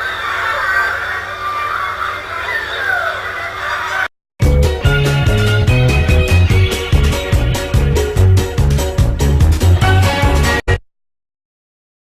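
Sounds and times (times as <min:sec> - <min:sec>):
music with heavy bass and drums: 0:04.4 - 0:10.8.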